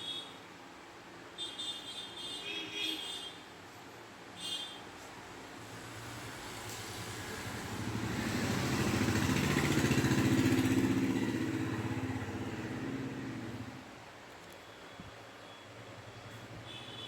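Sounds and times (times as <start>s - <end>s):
vehicle engine passing by: 6.6s - 13.8s.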